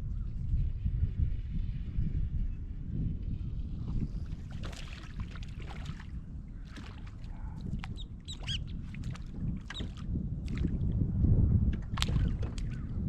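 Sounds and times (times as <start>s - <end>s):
wind rumble on microphone: 0.0s - 13.0s
water slapping boat hull: 3.8s - 13.0s.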